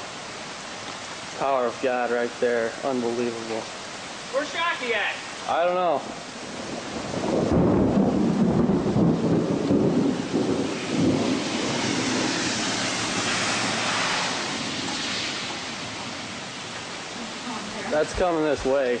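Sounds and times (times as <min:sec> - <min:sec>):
rain and wind hiss: 0:00.0 - 0:19.0
thunder rumble: 0:06.0 - 0:17.4.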